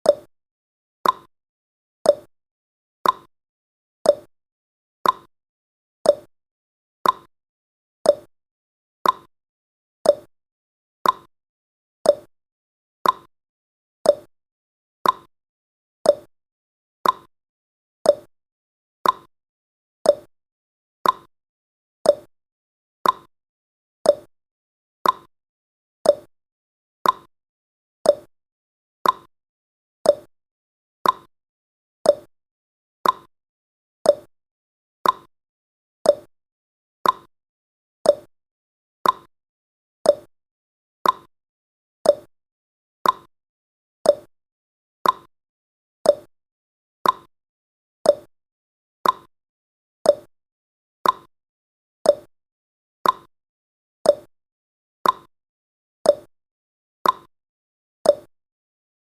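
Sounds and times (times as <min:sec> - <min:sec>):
clock ticking: 0:33.0 - 0:33.3, 0:39.0 - 0:39.3, 0:43.0 - 0:43.3, 0:45.0 - 0:45.3, 0:47.0 - 0:47.3, 0:49.0 - 0:49.3.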